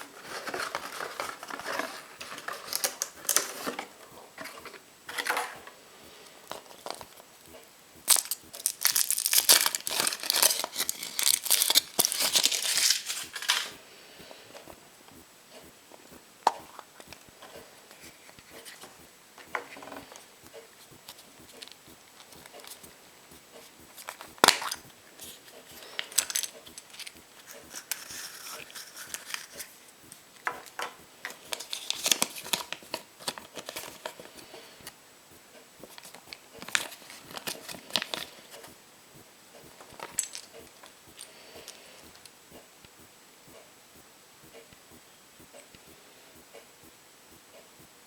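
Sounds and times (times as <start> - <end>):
foil wrapper crinkling and tearing: 8.1 - 13.7
sharp clicks and taps: 13.3 - 17.7, 34.4 - 48.0.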